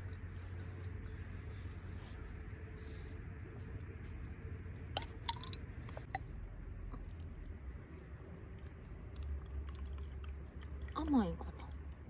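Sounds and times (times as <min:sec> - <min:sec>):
steady low hum: 0:00.0 - 0:12.0
person chewing strawberry: 0:06.8 - 0:11.0.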